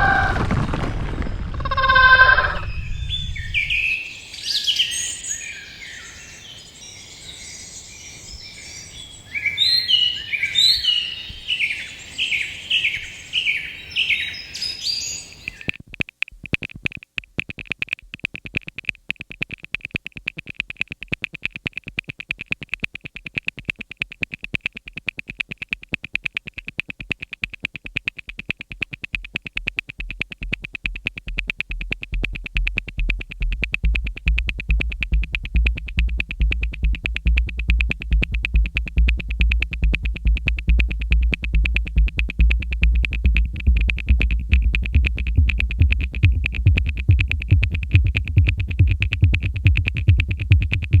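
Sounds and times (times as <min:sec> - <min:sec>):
deep synth bass: 0:31.7 - 0:51.0.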